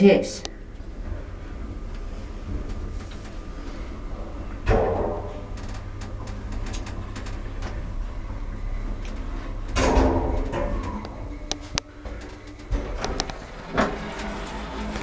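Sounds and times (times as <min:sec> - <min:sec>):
lift humming: 0:00.0 - 0:15.0
loud clunk with ringing: 0:00.5 - 0:08.0.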